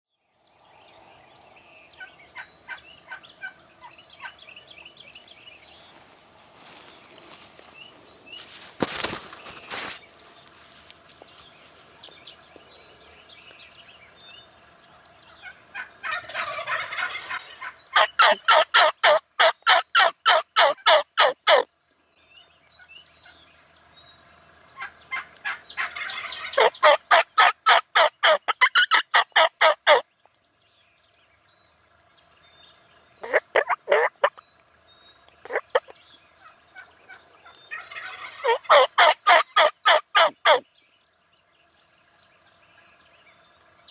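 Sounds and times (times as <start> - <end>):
faint songbird chirps: 0.1 - 20.4, 21.2 - 27.3, 27.9 - 43.9
turkey calling: 2.0 - 4.5, 15.3 - 21.7, 24.8 - 30.0, 33.2 - 34.4, 35.4 - 40.6.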